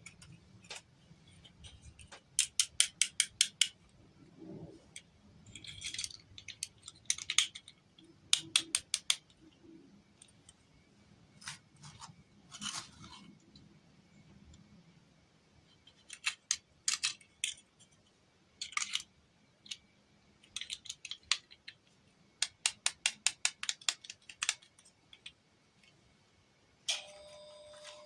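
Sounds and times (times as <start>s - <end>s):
sharp clicks and snips: 22.4s - 25.3s
ringing tone: 26.9s - 28.0s.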